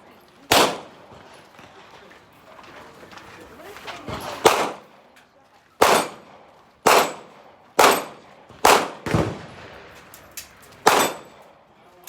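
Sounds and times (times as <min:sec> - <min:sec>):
gunshots: 0:00.5 - 0:01.8, 0:04.1 - 0:05.0, 0:05.8 - 0:11.6.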